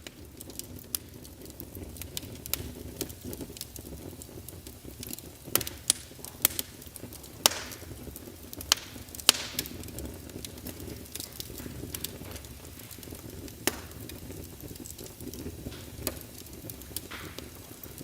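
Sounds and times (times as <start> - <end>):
low rumble of flames: 0.0 - 18.0
wood fire crackling: 0.0 - 18.0
sharp pops: 7.4 - 7.9, 11.1 - 14.2, 14.8 - 18.0.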